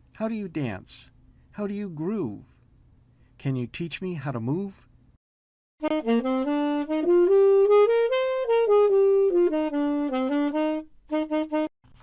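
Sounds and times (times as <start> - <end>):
solo saxophone phrase: 5.8 - 11.7.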